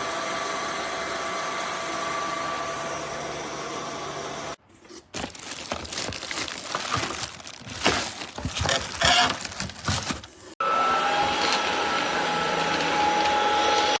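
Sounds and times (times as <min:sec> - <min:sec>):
vacuum cleaner motor whining: 0:00.0 - 0:04.6, 0:06.9 - 0:14.0
knocks clicks and rattles: 0:05.3 - 0:10.3.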